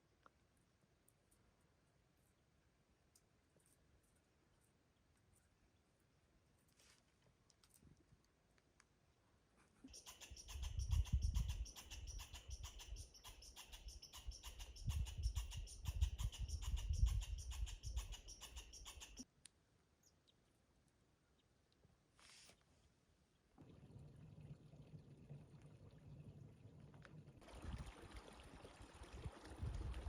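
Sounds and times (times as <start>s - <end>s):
small animal chirping: 9.9s - 19.3s
wind rumbling on microphone: 10.5s - 12.8s, 14.5s - 18.2s, 27.5s - 28.2s, 28.8s - 30.0s.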